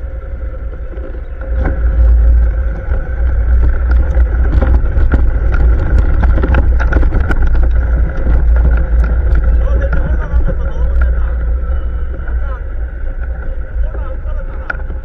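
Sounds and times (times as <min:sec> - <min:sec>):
atv engine rumbling: 0:00.0 - 0:15.0
sharp knocks and rattles: 0:00.7 - 0:12.4.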